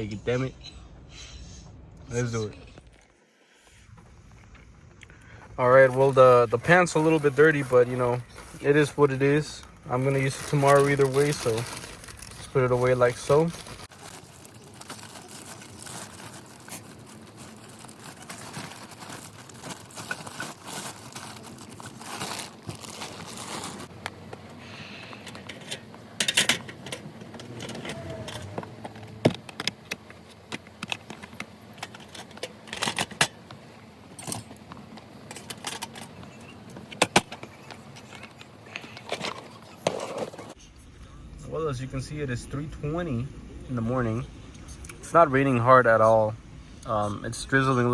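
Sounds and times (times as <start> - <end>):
rustling and crinkling of bags: 2.7 - 40.6.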